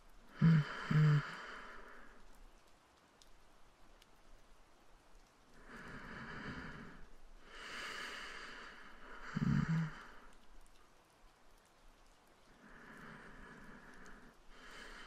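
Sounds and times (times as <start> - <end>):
man breathing deeply: 5.6 - 10.4, 12.6 - 15.0.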